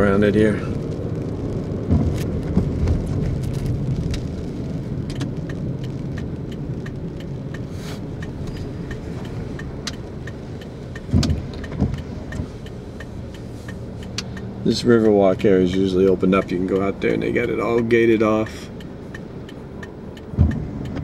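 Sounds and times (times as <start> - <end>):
car road rumble: 0.0 - 21.0
light ticks and rattles: 0.0 - 21.0.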